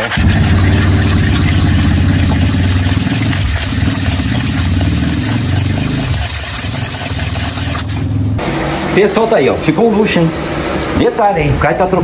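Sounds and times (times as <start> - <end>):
motorcycle engine idling: 0.0 - 8.7.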